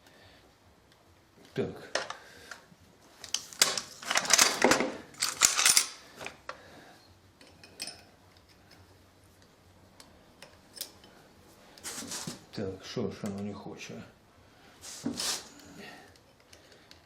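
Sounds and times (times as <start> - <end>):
metal parts rattling and clinking: 3.6 - 6.4, 7.4 - 8.6.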